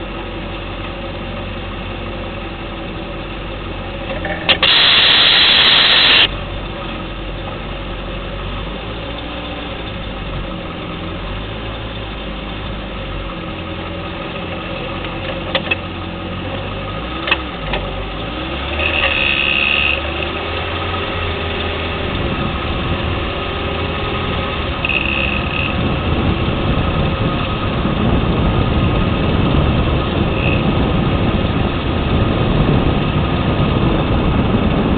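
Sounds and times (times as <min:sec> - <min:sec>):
car engine humming: 0:00.0 - 0:34.9
suspension clicks: 0:04.0 - 0:06.3, 0:15.0 - 0:15.9, 0:17.2 - 0:17.9, 0:18.7 - 0:20.7, 0:24.7 - 0:25.8
loud hiss: 0:04.5 - 0:06.3.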